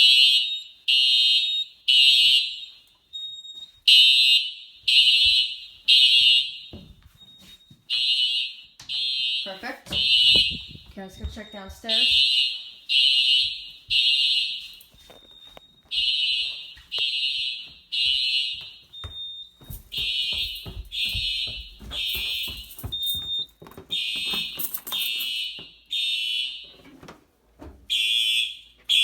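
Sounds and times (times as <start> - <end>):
fire alarm horns blasting: 0.0 - 26.9, 27.9 - 29.0
footsteps thumping: 4.9 - 8.2, 9.6 - 25.8.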